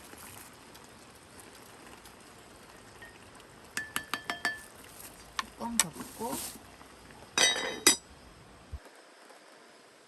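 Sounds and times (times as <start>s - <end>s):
rain hissing: 0.0s - 4.0s, 4.6s - 7.4s
metallic clinks on cooking pot: 3.8s - 4.7s.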